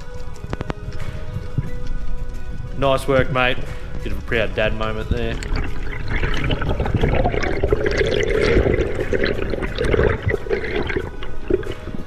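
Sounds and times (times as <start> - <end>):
water splashing and bubbling: 3.9 - 12.0.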